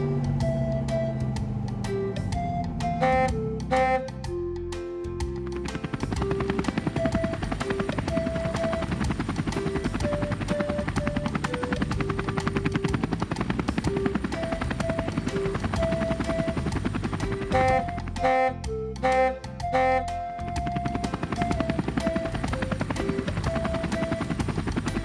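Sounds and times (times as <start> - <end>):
background music melody: 0.0 - 25.0
helicopter rotor chopping: 5.3 - 25.0.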